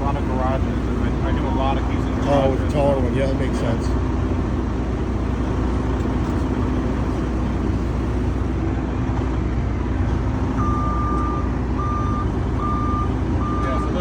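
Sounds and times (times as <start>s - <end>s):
vehicle engine idling: 0.0s - 14.0s
reversing alarm beeping: 10.5s - 14.0s.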